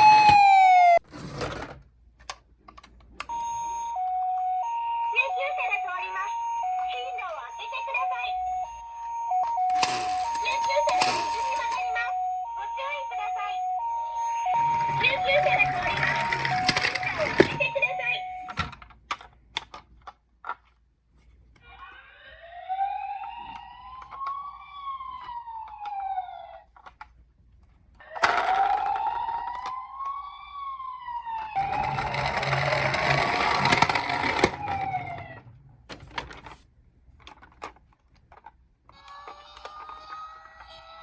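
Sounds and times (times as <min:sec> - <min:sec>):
toy electronic siren wailing: 0:03.3 - 0:18.6, 0:21.7 - 0:26.6, 0:28.0 - 0:35.4.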